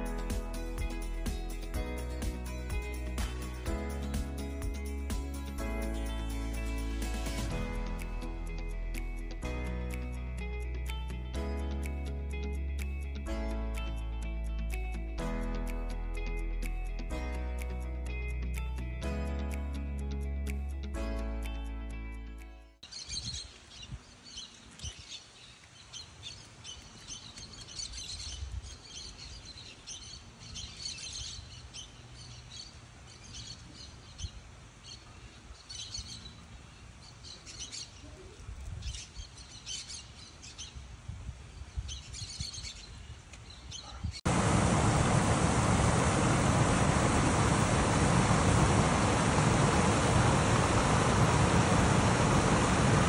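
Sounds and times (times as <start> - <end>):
small birds chirping: 22.8 - 40.8, 41.6 - 44.3
waterfall rushing: 44.3 - 53.0.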